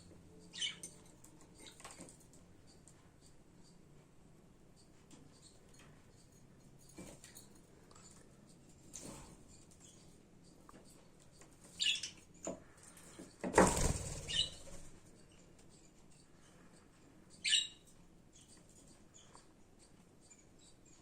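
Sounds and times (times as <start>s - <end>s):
budgerigars chirping: 0.4s - 0.9s, 11.8s - 12.2s, 14.1s - 15.3s, 17.3s - 20.8s
wings flapping: 13.5s - 15.0s.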